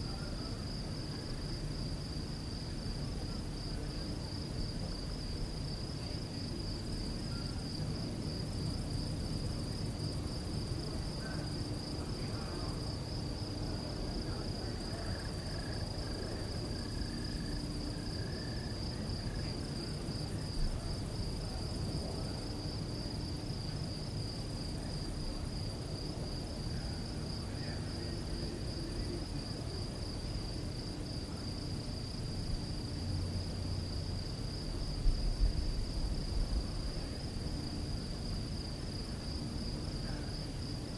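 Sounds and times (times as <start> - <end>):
crickets chirping: 0.0 - 40.9
faint low rumble: 32.6 - 39.2.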